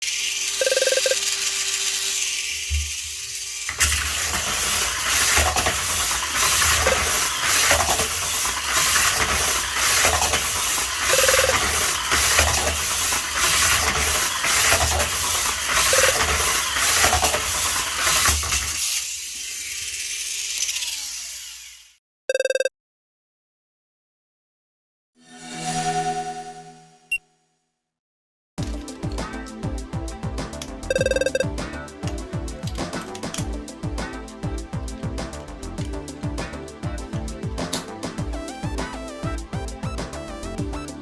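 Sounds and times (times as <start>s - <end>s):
toy car motor grinding: 0.0s - 22.0s, 34.9s - 36.2s, 37.1s - 41.0s.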